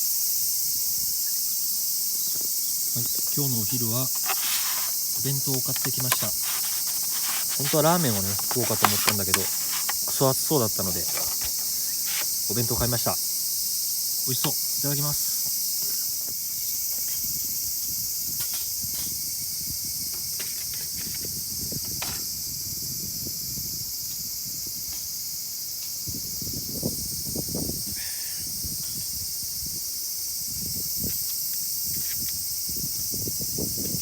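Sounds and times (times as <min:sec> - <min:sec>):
high-pitched insect chorus: 0:00.0 - 0:34.0.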